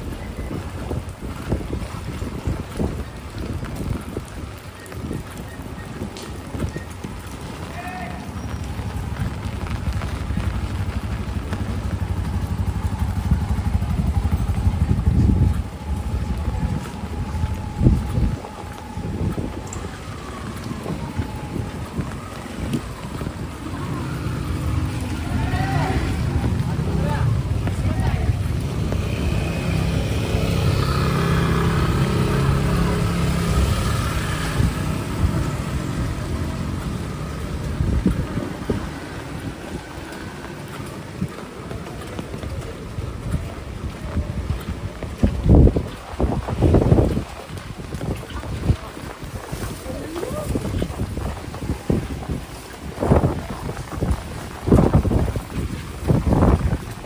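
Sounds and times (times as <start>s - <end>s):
strong wind buffeting microphone: 0.0s - 57.0s
heavy rain hiss: 7.1s - 42.0s
vehicle engine passing: 8.2s - 41.4s.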